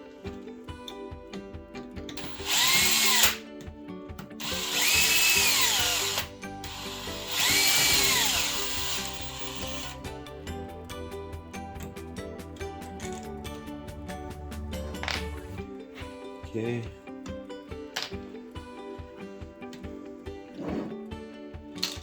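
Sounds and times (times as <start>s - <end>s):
background music: 0.0s - 22.0s
electric drill whining: 2.2s - 3.4s, 4.4s - 10.2s.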